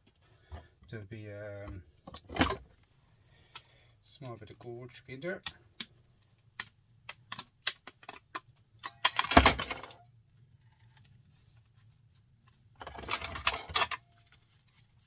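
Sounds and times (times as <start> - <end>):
printer parts clattering: 8.9 - 10.0, 12.8 - 14.1.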